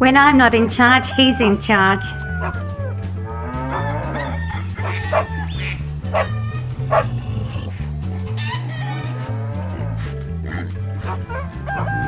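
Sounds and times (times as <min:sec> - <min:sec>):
background music with bass line: 0:00.0 - 0:12.0
dog barking: 0:03.7 - 0:07.2.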